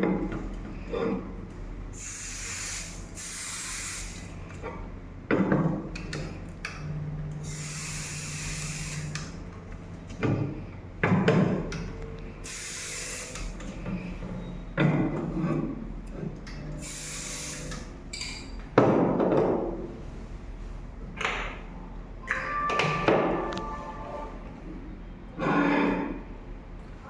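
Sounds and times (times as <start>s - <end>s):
aerosol can spraying: 2.0s - 4.3s, 7.5s - 9.2s
low steady hum: 20.2s - 27.0s.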